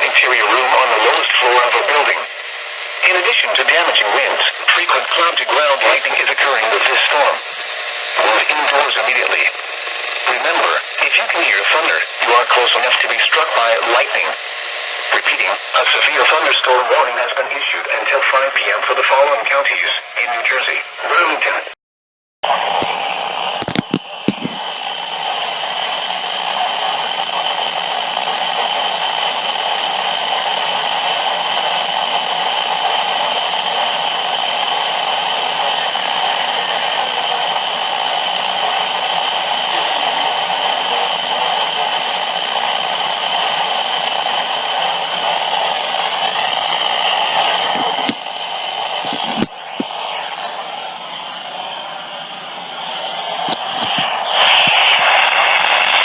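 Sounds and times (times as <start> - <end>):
radio static hiss: 0.0 - 21.8, 22.4 - 56.0
radio clicks: 23.6 - 24.7, 48.9 - 50.5.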